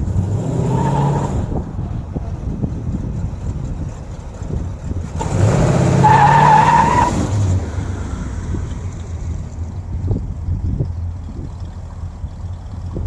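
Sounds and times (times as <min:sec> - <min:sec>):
car engine revving: 0:00.0 - 0:13.0
tyres squealing: 0:05.8 - 0:07.4.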